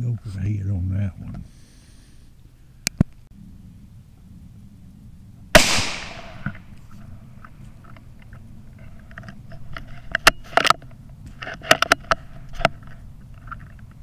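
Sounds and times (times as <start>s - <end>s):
rifle shot with echo: 5.6s - 6.6s.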